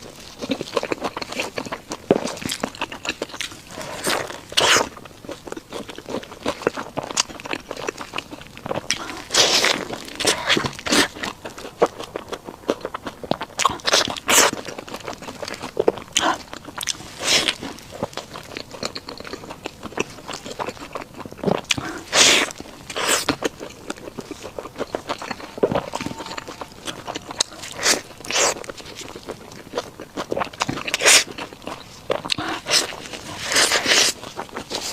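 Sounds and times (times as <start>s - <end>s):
chewing burger: 0.0s - 34.9s.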